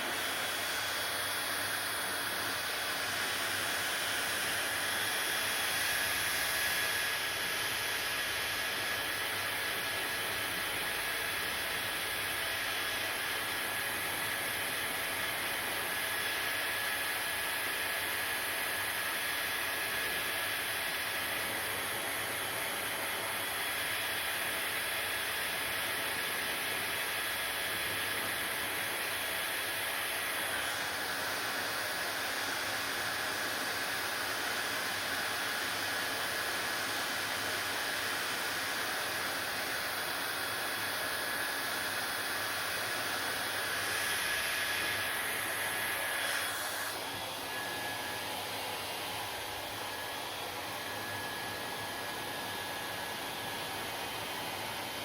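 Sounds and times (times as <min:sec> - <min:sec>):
hair dryer running: 0:00.0 - 0:55.0.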